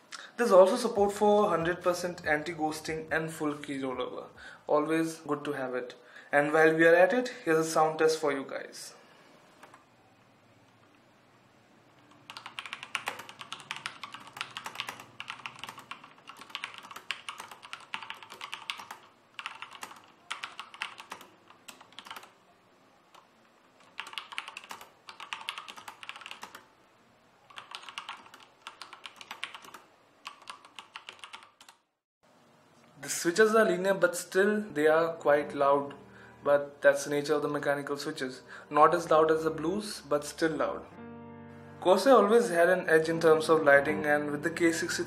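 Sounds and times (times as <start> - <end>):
mechanical keyboard keystrokes clacking: 12.3 - 22.4, 23.8 - 26.6, 27.5 - 31.8.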